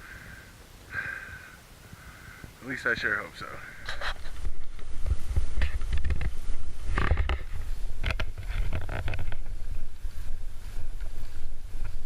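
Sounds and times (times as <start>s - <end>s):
wind buffeting microphone: 2.9s - 12.0s
boots crunching on snow: 7.4s - 12.0s.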